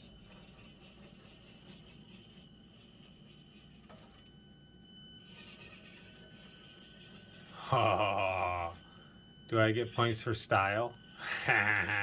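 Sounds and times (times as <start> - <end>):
small electric motor whining: 0.0 - 12.0.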